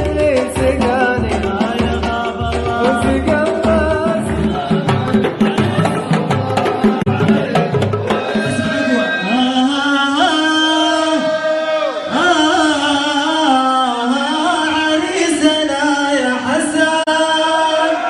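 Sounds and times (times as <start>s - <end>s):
light percussion: 0.0s - 8.9s
man singing long held notes: 0.0s - 18.0s.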